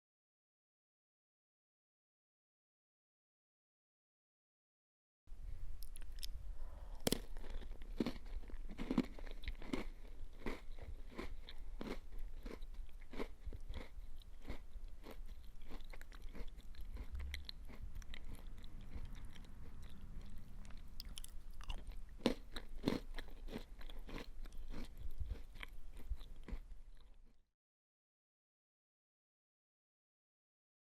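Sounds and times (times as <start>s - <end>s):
chewing crunchy cookie: 5.8s - 27.4s.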